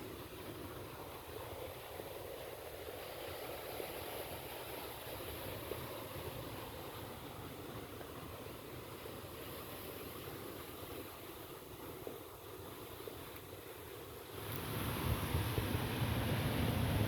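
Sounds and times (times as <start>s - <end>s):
sea surf on a beach: 0.0s - 17.0s
wind noise on microphone: 14.3s - 17.0s.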